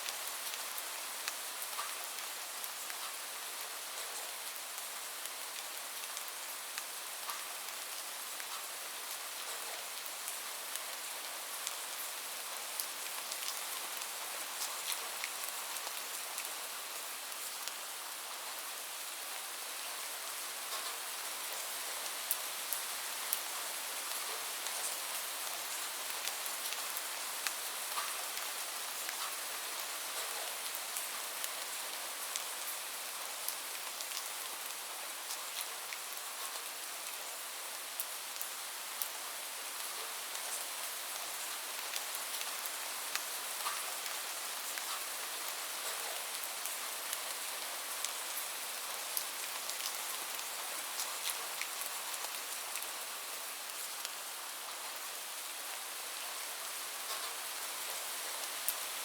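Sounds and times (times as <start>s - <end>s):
raindrops ticking on a surface: 0.0s - 54.8s, 57.0s - 59.0s
light rain hiss: 0.0s - 59.0s.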